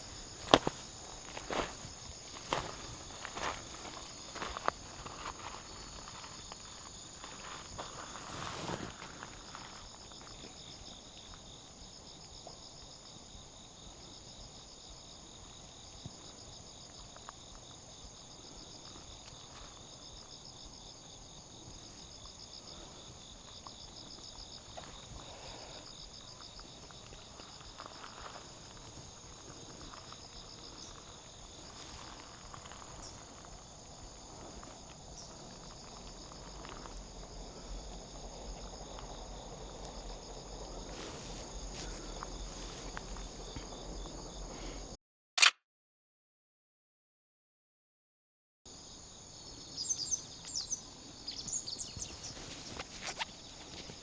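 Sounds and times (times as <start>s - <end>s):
footsteps scuffing: 0.0s - 9.5s, 40.8s - 43.4s, 52.0s - 54.0s
insects chirping in trills: 0.0s - 45.0s, 48.7s - 54.0s.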